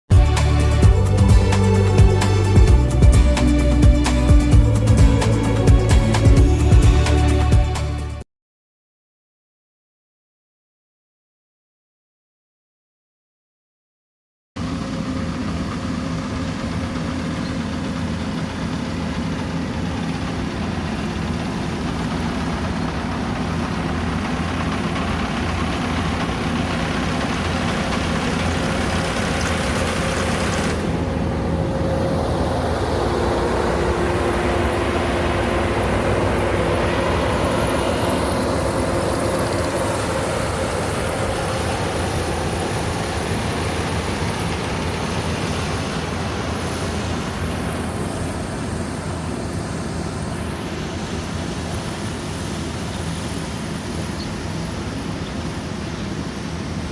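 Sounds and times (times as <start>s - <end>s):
combine harvester engine running: 0.1s - 8.2s, 14.6s - 56.9s
lower machine whine: 0.1s - 8.2s, 14.6s - 56.9s
thin machine whine: 14.6s - 56.9s.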